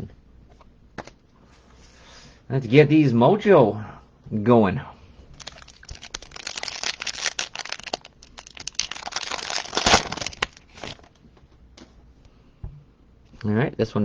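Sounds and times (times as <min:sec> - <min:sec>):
wrapper crinkling and tearing: 0:05.4 - 0:11.2.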